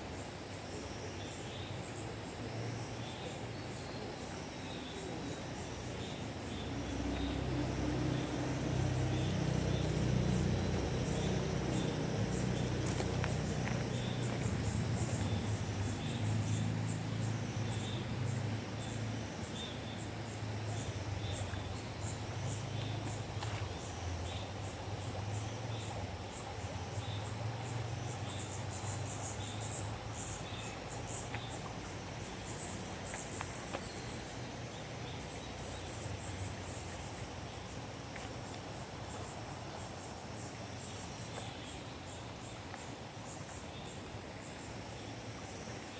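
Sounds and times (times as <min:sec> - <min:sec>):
insects trilling: 0:00.6 - 0:45.9
low steady rumble: 0:06.6 - 0:19.0.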